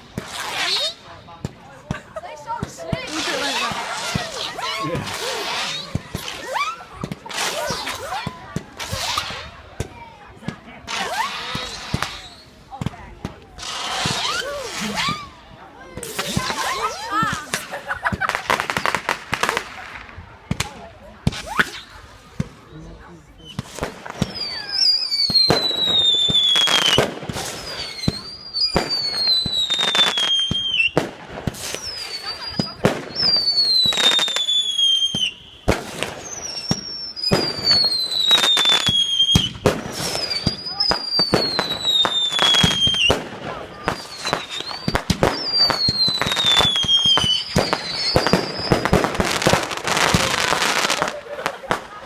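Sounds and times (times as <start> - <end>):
firework bangs and crackling: 0.0 - 52.0
whistling firework falling in pitch: 23.4 - 52.0.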